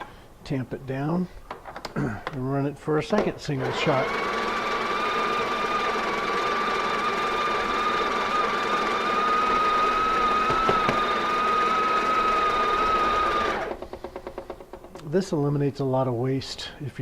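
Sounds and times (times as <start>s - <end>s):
coffee grinder whining and grinding: 3.4s - 14.7s.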